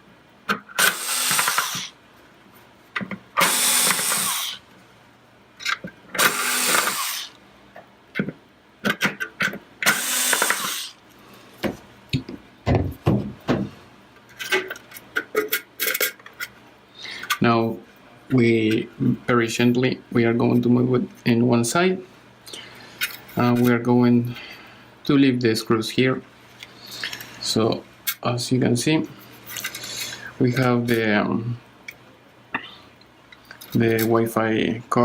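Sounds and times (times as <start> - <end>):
power screwdriver whirring: 0.8 - 1.9, 3.4 - 4.6, 6.2 - 7.4, 9.8 - 11.0.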